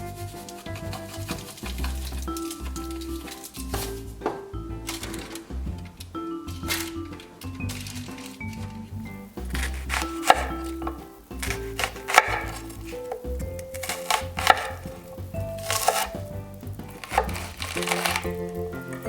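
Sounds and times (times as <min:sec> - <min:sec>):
soft background music: 0:00.0 - 0:19.0
knife cutting on cutting board: 0:00.7 - 0:04.0, 0:09.4 - 0:15.0, 0:15.6 - 0:16.3, 0:17.0 - 0:18.4.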